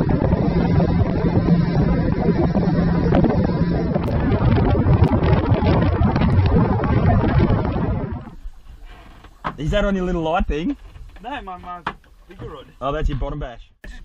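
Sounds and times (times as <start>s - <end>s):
wind buffeting microphone: 0.0s - 8.8s
motorboat running: 0.0s - 9.4s.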